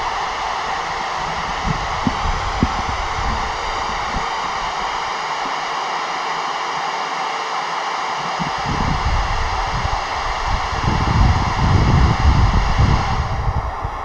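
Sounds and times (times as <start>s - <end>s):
wind rumble on microphone: 0.0s - 5.0s, 8.4s - 14.0s
radio static hiss: 0.0s - 14.0s.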